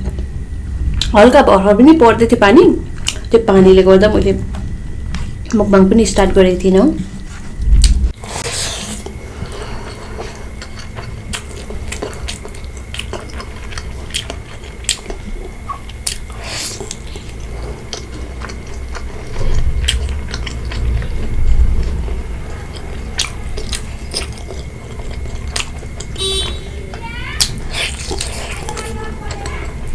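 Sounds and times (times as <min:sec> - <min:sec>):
low rumble: 0:00.0 - 0:08.2
chewing and biting food: 0:07.8 - 0:29.9.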